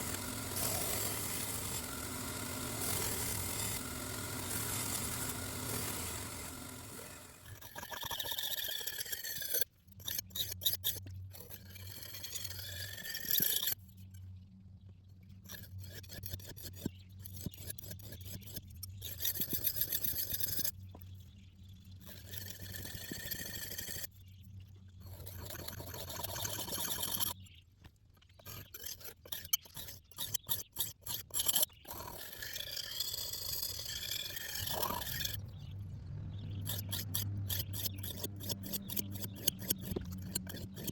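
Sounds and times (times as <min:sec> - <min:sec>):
steady low hum: 0:00.0 - 0:07.6, 0:33.8 - 0:40.9
scraping and rubbing strokes: 0:00.0 - 0:13.8, 0:15.5 - 0:20.8, 0:22.0 - 0:24.1, 0:25.0 - 0:27.4, 0:28.4 - 0:35.7, 0:36.3 - 0:40.9.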